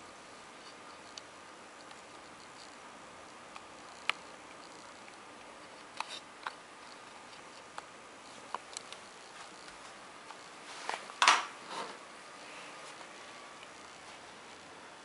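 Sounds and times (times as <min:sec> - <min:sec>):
faint steady hiss: 0:00.0 - 0:15.0
small clicks: 0:03.3 - 0:05.2, 0:08.5 - 0:10.4.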